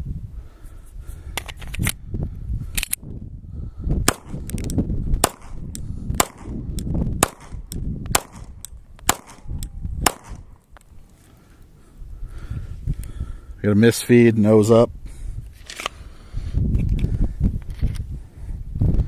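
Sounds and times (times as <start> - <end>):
wind rumble on microphone: 0.0 - 19.0
pistol shots with echo: 4.1 - 4.4, 5.2 - 5.6, 6.2 - 6.6, 7.2 - 10.5.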